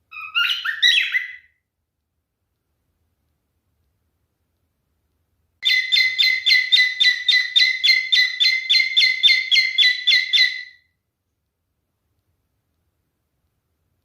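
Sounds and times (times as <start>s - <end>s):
cockatiel chirping: 0.1s - 1.5s, 5.6s - 10.8s.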